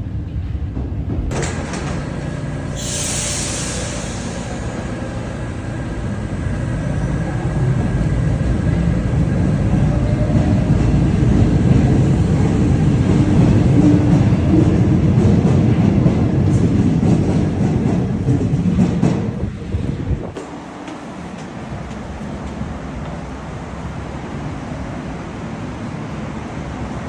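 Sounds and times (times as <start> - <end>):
train rumble: 0.0 - 27.0
air hiss: 2.1 - 7.4.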